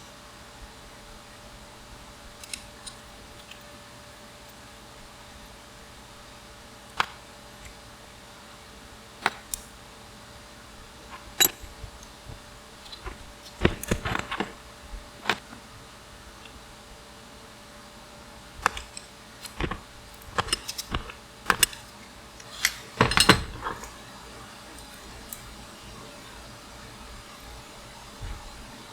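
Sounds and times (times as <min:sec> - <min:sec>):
metal bicycle parts clinking: 0:11.1 - 0:14.6, 0:18.6 - 0:24.0.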